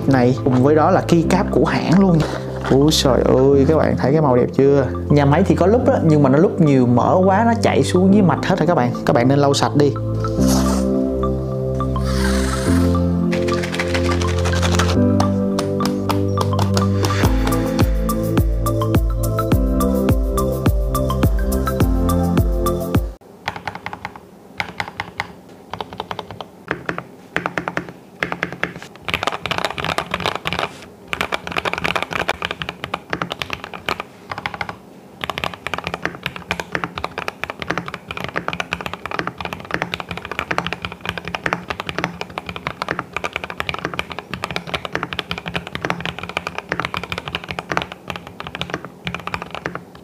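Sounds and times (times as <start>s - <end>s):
music: 0.0s - 23.2s
mechanical keyboard typing: 12.1s - 17.3s, 23.4s - 50.0s.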